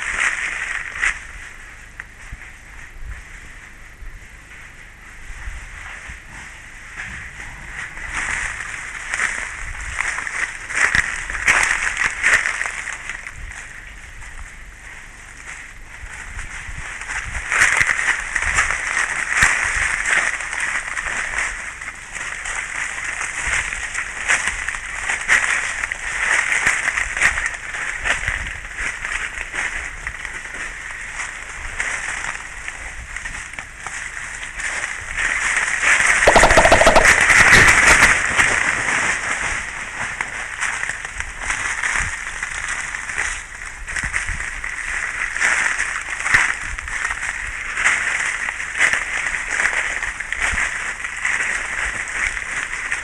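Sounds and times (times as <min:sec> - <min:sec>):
forest ambience hiss: 0:00.0 - 0:37.1
gorilla chest drumming: 0:36.3 - 0:37.7.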